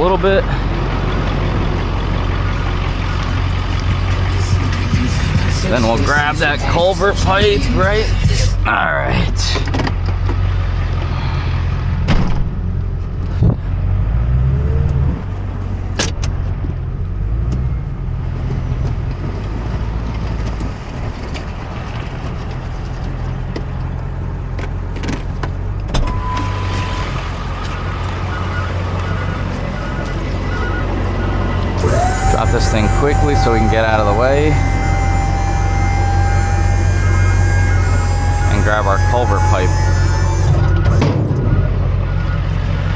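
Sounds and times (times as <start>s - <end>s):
truck engine running: 0.0s - 42.9s
sharp knocks and clunks: 12.0s - 13.6s, 14.4s - 22.7s
steady beep: 26.0s - 42.9s.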